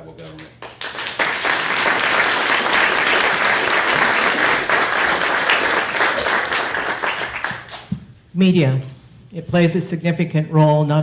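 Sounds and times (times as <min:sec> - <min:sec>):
audience applauding: 0:00.3 - 0:07.9.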